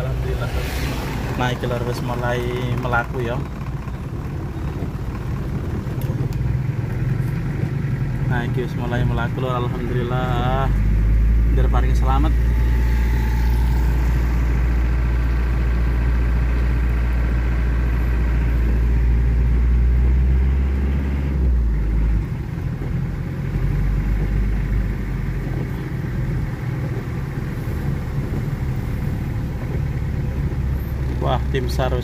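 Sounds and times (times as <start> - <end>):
vehicle engine droning: 0.0 - 32.0.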